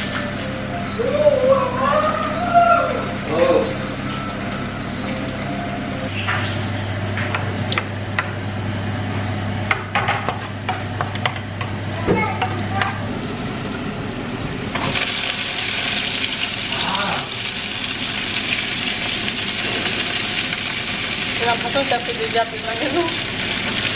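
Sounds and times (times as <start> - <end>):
low hum: 0.0 - 9.7
food sizzling in a pan: 14.8 - 23.9.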